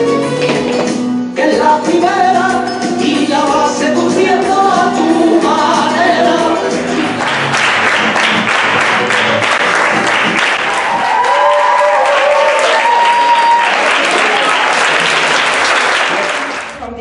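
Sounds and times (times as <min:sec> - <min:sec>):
group singing: 0:01.4 - 0:07.4
audience applauding: 0:06.9 - 0:16.8.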